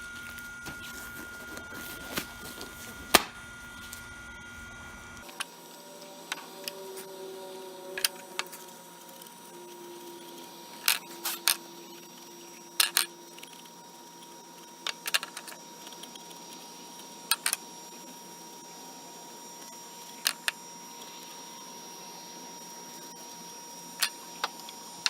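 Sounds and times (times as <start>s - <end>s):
faint steady hum: 0.0s - 14.7s.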